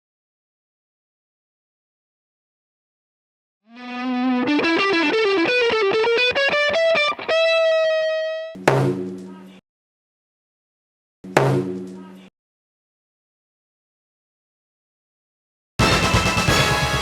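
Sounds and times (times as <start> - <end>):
plucked string intro music: 3.7 - 8.6, 15.8 - 17.0.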